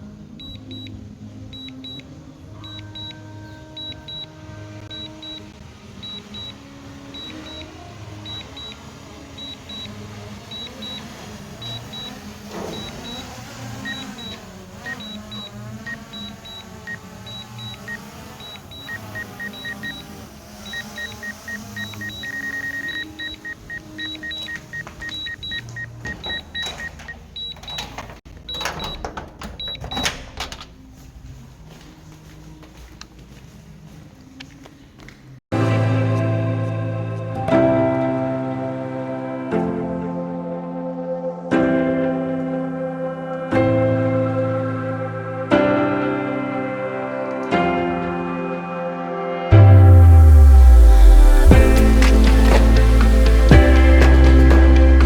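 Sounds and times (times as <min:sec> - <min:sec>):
lower beep: 0:02.6 - 0:06.6, 0:07.2 - 0:27.6, 0:49.5 - 0:55.0
high warning beeps: 0:02.6 - 0:30.2.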